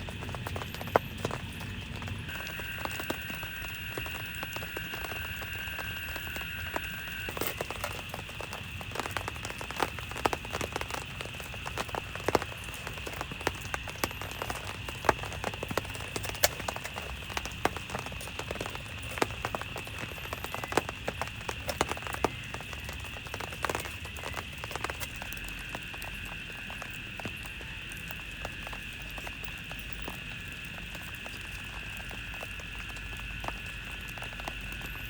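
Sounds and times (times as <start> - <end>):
raindrops tapping on a surface: 0.0 - 35.0
steady rain hiss: 0.0 - 35.0.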